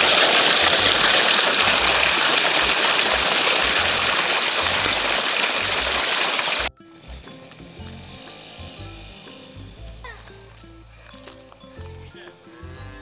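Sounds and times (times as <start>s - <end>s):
rushing water: 0.0s - 6.7s.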